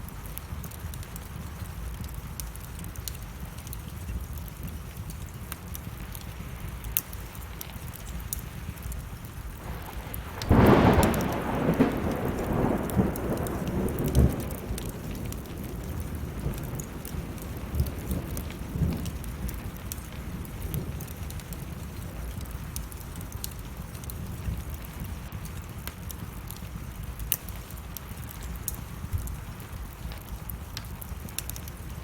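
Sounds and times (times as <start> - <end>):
steady rain: 0.0 - 32.0
wood fire crackling: 0.0 - 32.0
thunder rumbling: 9.6 - 25.3.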